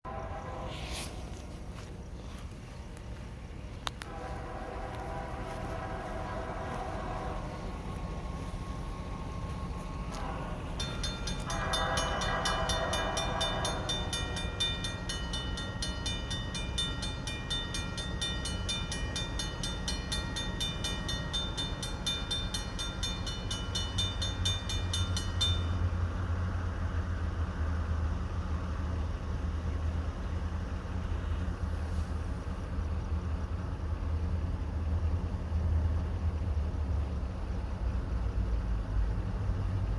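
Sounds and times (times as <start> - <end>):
train horn blast: 0.0 - 1.9, 4.0 - 16.3
railroad crossing bell ringing: 0.0 - 2.5, 4.0 - 28.4
diesel locomotive rumble: 0.0 - 39.9.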